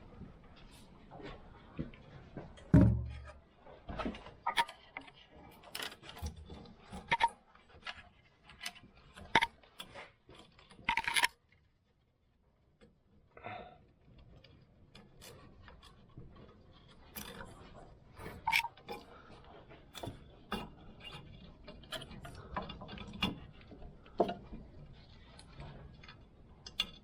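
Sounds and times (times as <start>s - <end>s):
heavy thump: 2.7s - 3.3s
hands clicking and rubbing wiring: 3.9s - 11.8s.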